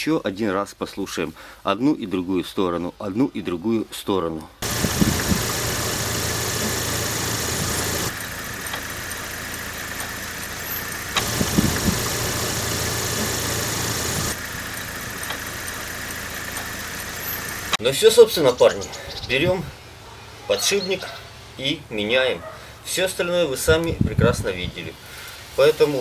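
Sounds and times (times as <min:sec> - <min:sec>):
car wheel bearing humming: 0:04.6 - 0:17.8.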